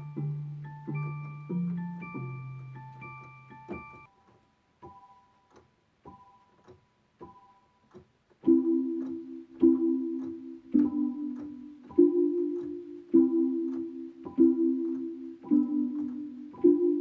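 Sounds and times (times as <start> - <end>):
electronic keyboard chords: 0.0 - 4.2, 8.4 - 17.0
soft clicks: 2.8 - 16.7.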